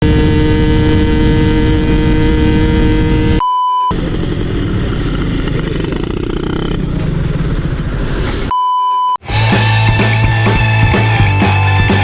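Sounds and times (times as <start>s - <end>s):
two-stroke motorcycle engine: 0.0s - 8.0s
short beep: 3.4s - 3.9s, 8.5s - 9.2s.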